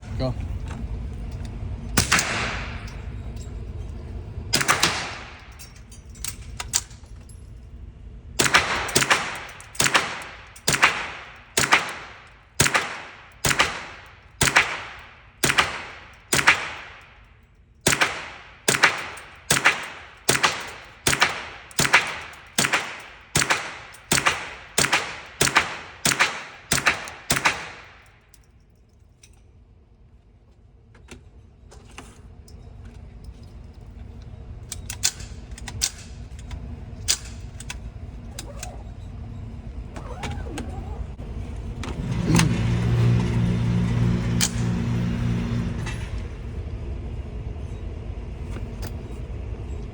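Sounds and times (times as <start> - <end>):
suppressed rifle shots: 2.0 - 2.9, 4.5 - 5.4, 8.4 - 17.1, 17.8 - 28.0.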